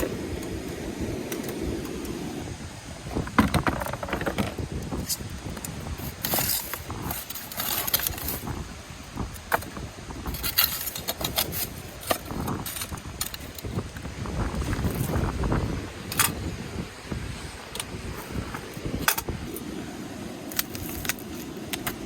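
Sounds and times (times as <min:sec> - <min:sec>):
wind rumbling on microphone: 0:00.0 - 0:22.0
gear rustling: 0:03.9 - 0:08.6.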